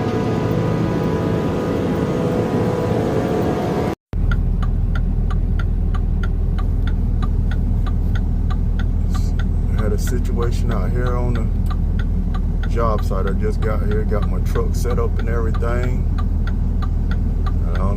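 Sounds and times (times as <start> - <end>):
deep engine rumble: 0.0 - 17.9
vehicle engine humming: 0.0 - 17.9
regular ticking: 4.1 - 17.9.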